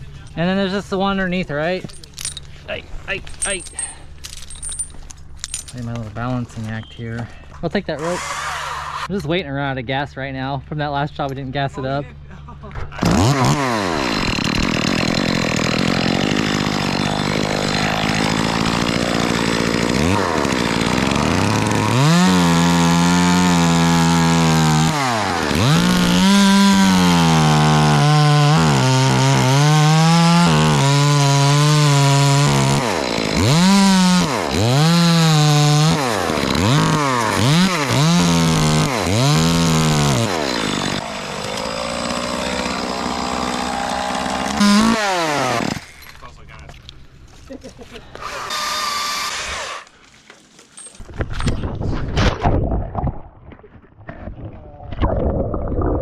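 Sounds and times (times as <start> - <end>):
chainsaw revving: 8.0 - 9.1, 13.0 - 46.1, 48.0 - 49.9.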